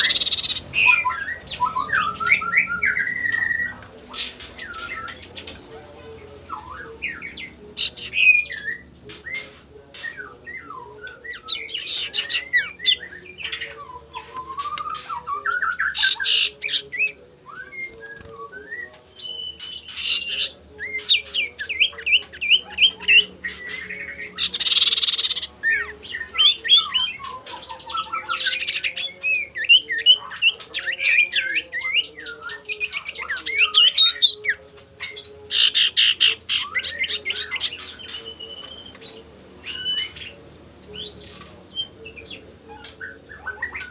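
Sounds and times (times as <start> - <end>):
bird whistling and trilling: 0.0 - 5.3, 8.2 - 34.3
harsh raspy bird notes: 0.0 - 40.4.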